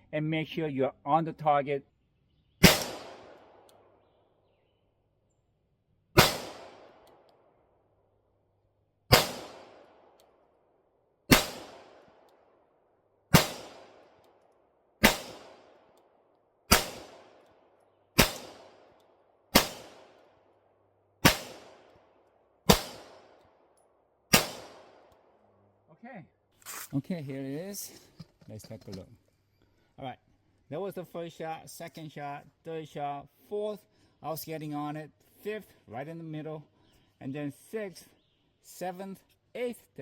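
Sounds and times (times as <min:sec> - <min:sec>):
pistol shots with echo: 0:02.6 - 0:04.0, 0:06.2 - 0:07.5, 0:09.1 - 0:10.4, 0:11.3 - 0:12.6, 0:13.3 - 0:14.3, 0:15.0 - 0:17.4, 0:18.2 - 0:20.4, 0:21.2 - 0:22.0, 0:22.6 - 0:23.7, 0:24.3 - 0:25.3.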